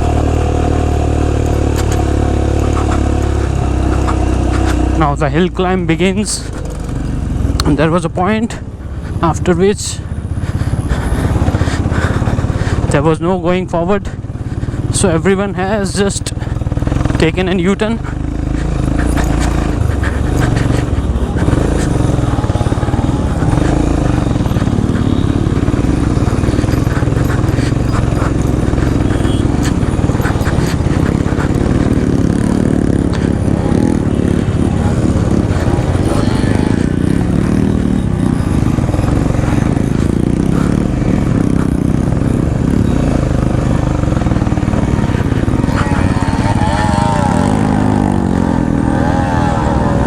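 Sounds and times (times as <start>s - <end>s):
motorcycle engine running: 0.0s - 50.0s.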